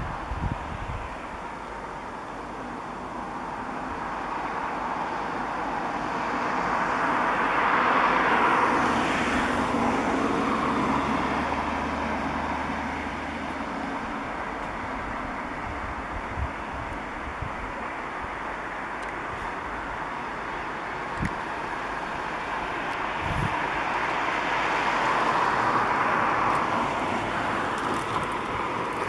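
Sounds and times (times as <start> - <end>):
vehicle passing by: 6.6 - 14.1, 21.8 - 29.0.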